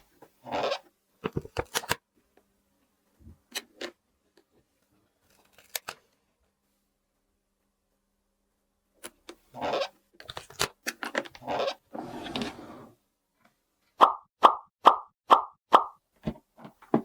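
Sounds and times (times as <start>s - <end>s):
plastic scraping and rustling: 10.2s - 12.9s.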